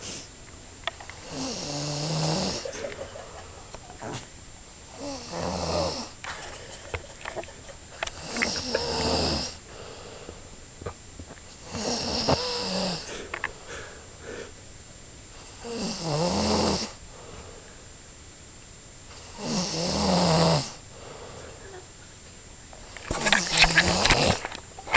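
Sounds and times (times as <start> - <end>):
person snoring: 1.2 - 2.8, 5.0 - 6.2, 8.1 - 10.3, 11.6 - 14.5, 15.5 - 17.7, 19.2 - 21.8.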